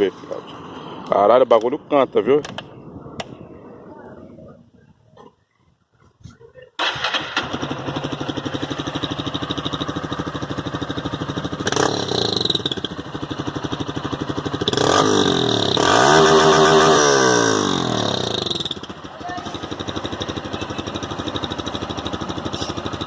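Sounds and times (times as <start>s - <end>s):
motorcycle engine idling and revving: 6.8s - 23.0s.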